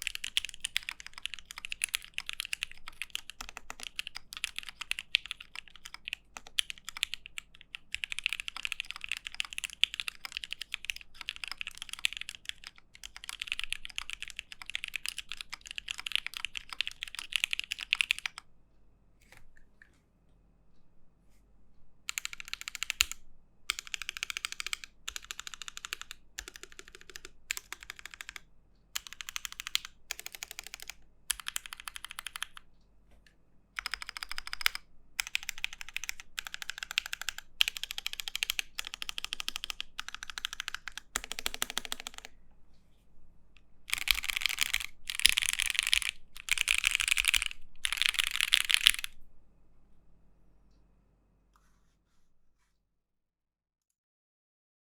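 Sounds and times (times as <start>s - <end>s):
mechanical keyboard typing: 0.0s - 18.5s, 22.1s - 32.6s, 33.8s - 42.3s, 43.9s - 49.2s.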